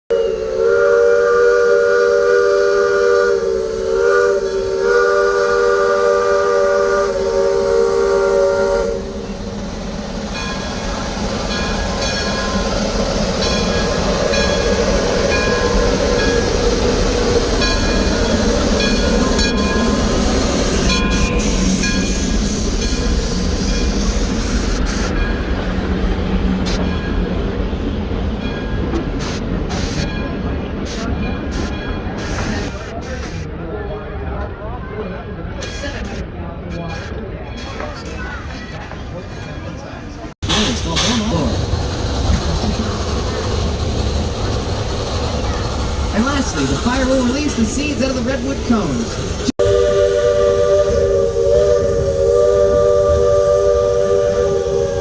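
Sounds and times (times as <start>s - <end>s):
steam locomotive whistle: 0.1s - 9.5s, 13.4s - 25.2s, 46.2s - 55.0s
train rumble and hiss: 0.1s - 55.0s.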